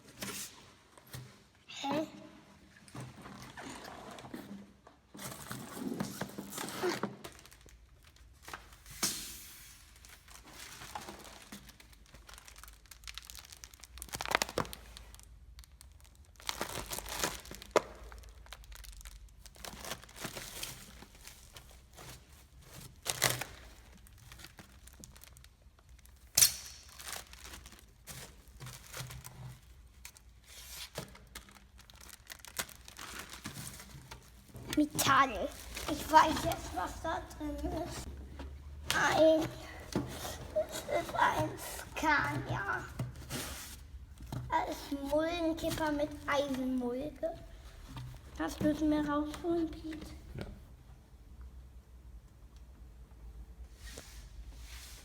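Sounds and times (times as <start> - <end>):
packaging rustling and crinkling: 5.2 - 50.0.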